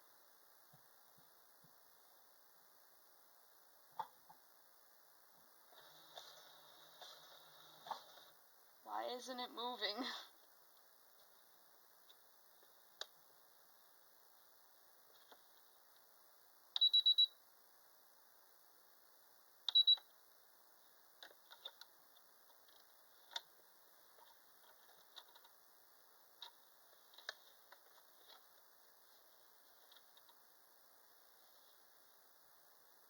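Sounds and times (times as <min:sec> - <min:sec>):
sewing machine beeping: 0:16.8 - 0:17.4, 0:19.7 - 0:20.1.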